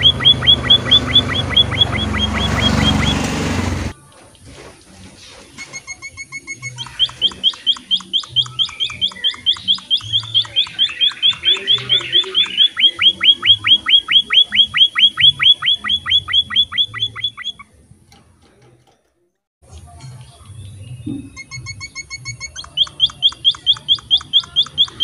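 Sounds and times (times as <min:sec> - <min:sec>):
finch chirping: 0:00.0 - 0:03.5, 0:05.9 - 0:17.7, 0:20.7 - 0:25.0.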